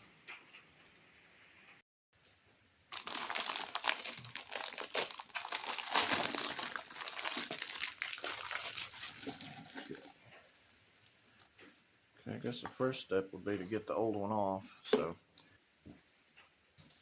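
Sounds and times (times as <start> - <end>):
crinkling and crumpling: 2.9 - 10.5.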